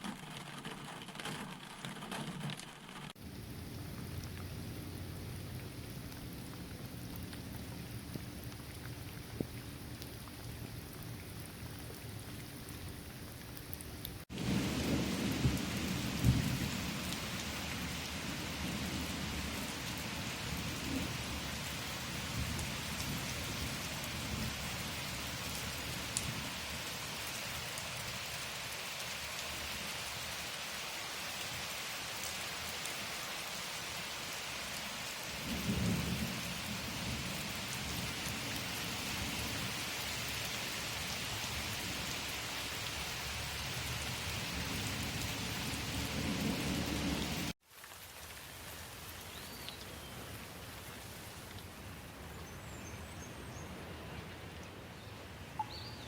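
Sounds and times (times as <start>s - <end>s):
steady rain pouring: 0.0s - 56.0s
low rolling thunder: 14.3s - 21.6s, 35.4s - 38.0s.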